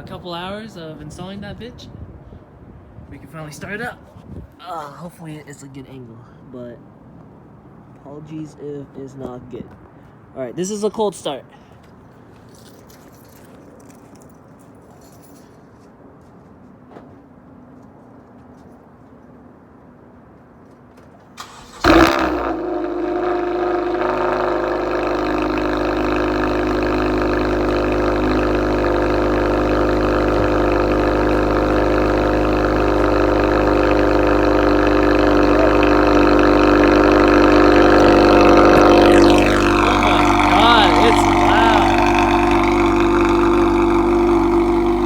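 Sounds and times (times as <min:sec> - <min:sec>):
car engine starting and idling: 0:21.4 - 0:45.0.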